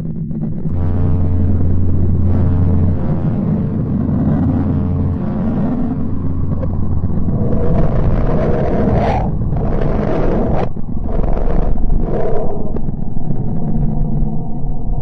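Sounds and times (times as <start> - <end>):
low rumbling noise: 0.0 - 15.0
steady low hum: 0.0 - 15.0.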